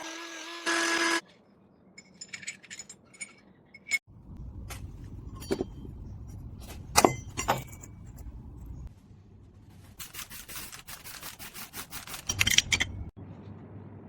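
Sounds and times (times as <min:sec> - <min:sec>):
metal scraping strokes: 0:09.7 - 0:13.1.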